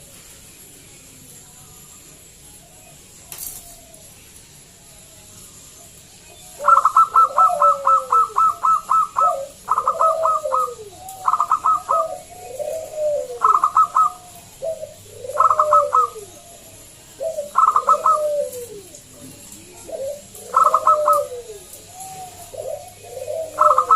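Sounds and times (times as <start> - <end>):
dove cooing: 5.8 - 23.9.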